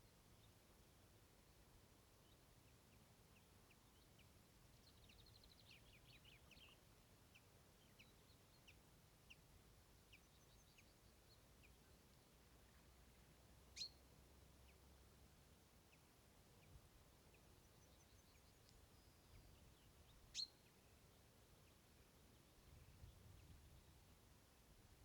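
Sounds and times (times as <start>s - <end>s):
small birds chirping: 13.7s - 14.9s, 16.6s - 23.9s.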